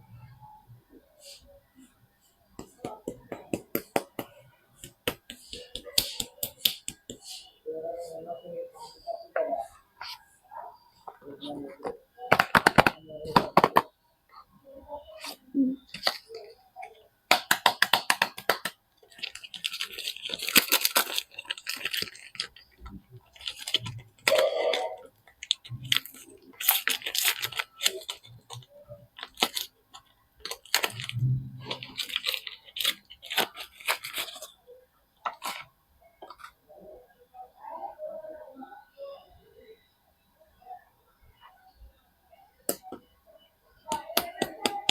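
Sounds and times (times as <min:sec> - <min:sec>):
sharp clicks and taps: 0:17.3 - 0:18.8
wrappers crinkling and tearing: 0:19.0 - 0:34.5.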